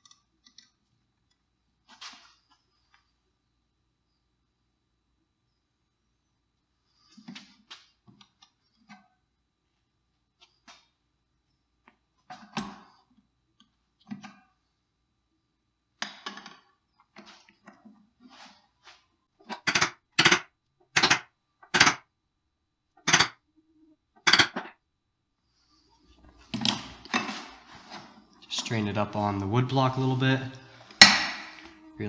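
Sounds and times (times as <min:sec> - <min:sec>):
hammer striking steel bar: 0:31.0 - 0:31.7.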